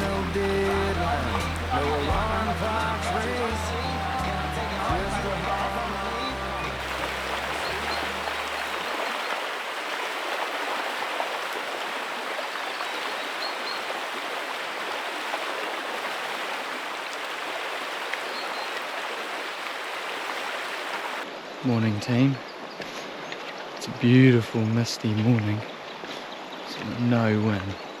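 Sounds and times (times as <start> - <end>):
background music: 0.0 - 8.4
river water running over stones: 0.0 - 21.6.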